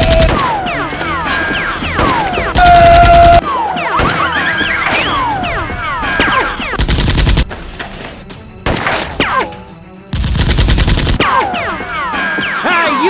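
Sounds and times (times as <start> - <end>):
rapid automatic gunfire: 6.8 - 7.4, 10.2 - 11.2.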